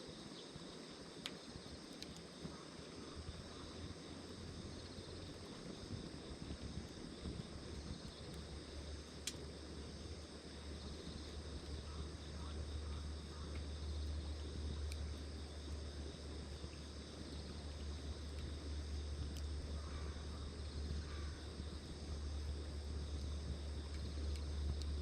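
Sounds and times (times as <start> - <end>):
steady low hum: 0.0 - 25.0
wood fire crackling: 4.6 - 12.3, 13.0 - 25.0.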